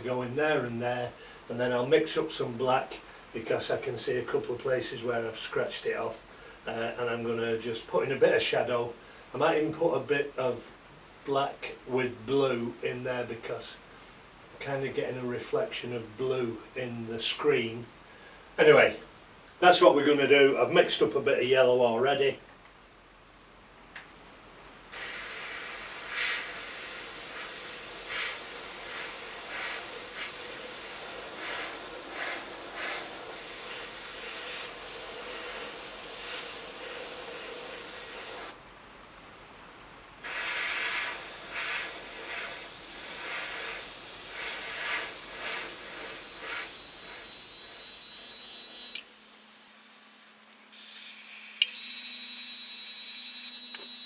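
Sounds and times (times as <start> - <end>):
airbrush hissing: 24.9 - 38.6, 40.2 - 54.0.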